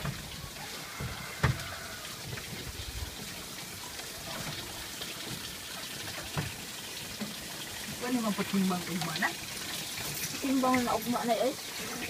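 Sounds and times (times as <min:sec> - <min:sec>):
water running and trickling: 0:00.0 - 0:12.0
knock: 0:01.0 - 0:01.6.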